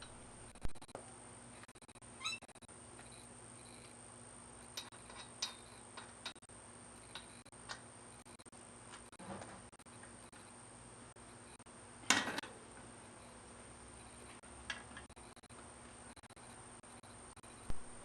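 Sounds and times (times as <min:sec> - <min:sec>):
electrical hum and whine: 0:00.0 - 0:18.0
short squeak: 0:02.2 - 0:03.8.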